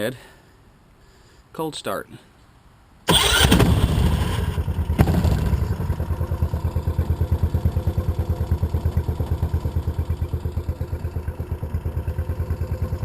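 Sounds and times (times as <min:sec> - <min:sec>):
small engine idling: 0:03.1 - 0:13.0.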